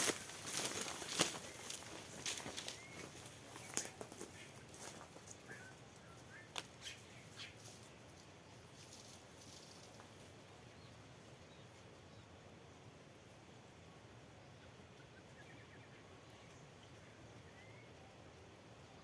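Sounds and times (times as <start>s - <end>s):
faint rustles and clicks: 0.0s - 10.6s
rural outdoor ambience: 0.0s - 19.0s
faint bird chirps: 1.3s - 4.7s, 5.3s - 8.0s, 15.0s - 18.3s.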